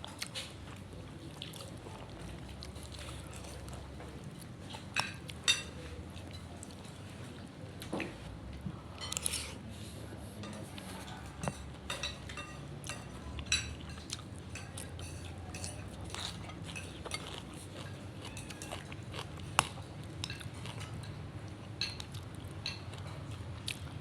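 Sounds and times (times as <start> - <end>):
utensils clinking against a dish: 4.7 - 7.1, 9.0 - 9.6, 10.4 - 23.3.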